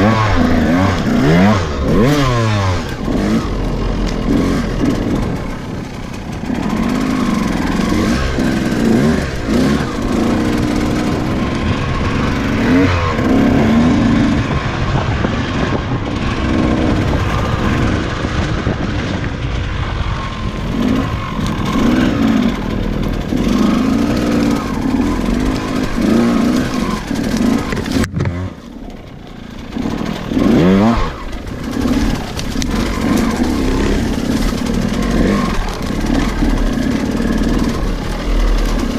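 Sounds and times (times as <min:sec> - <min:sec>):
motorcycle engine revving: 0:00.0 - 0:38.9.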